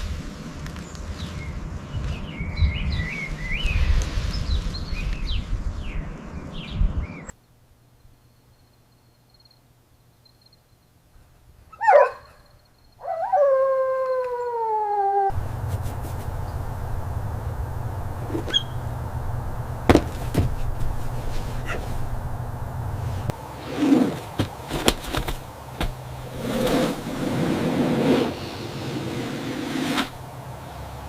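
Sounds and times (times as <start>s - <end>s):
animal howling: 13.0s - 15.4s
bird chirps: 18.4s - 18.9s.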